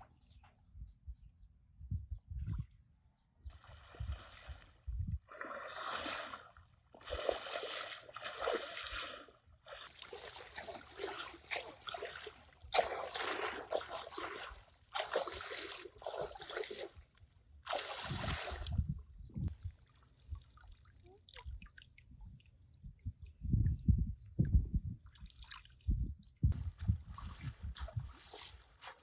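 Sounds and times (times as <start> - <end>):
water splashing: 3.5 - 17.0, 17.6 - 18.8.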